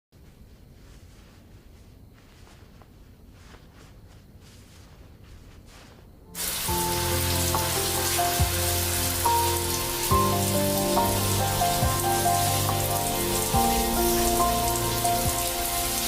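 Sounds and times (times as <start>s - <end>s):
steady rain hiss: 0.2s - 16.0s
music with held notes and low beat: 6.4s - 16.0s.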